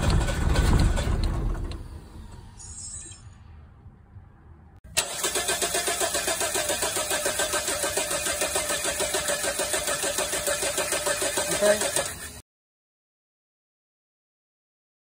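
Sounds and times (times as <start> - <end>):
car engine cranking on starter: 0.0 - 2.5, 4.9 - 12.4.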